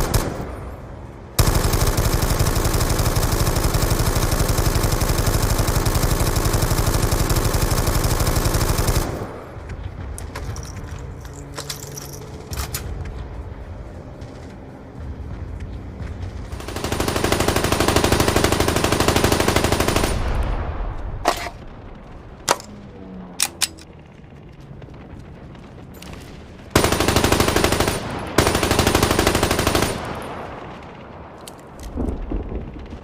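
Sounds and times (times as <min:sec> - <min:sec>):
machine gun firing bursts: 0:00.0 - 0:00.5, 0:01.4 - 0:09.4, 0:16.5 - 0:20.4, 0:26.6 - 0:30.8.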